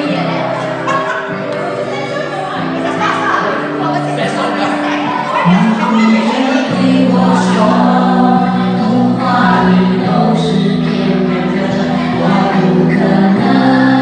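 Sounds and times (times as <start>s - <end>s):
choir singing long notes: 4.9s - 14.0s.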